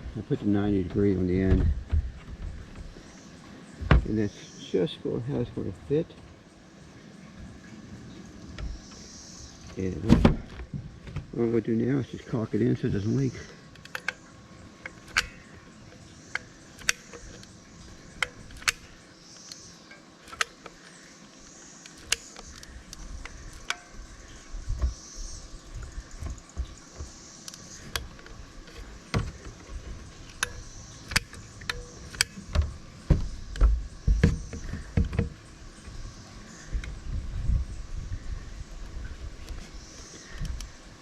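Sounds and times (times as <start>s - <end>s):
low uneven rumble: 0.0s - 19.2s, 22.5s - 41.0s
caulking gun trigger clicks: 13.7s - 14.2s, 14.8s - 15.5s, 16.3s - 17.5s, 18.1s - 19.6s, 20.2s - 20.9s, 21.8s - 23.9s, 30.3s - 32.4s.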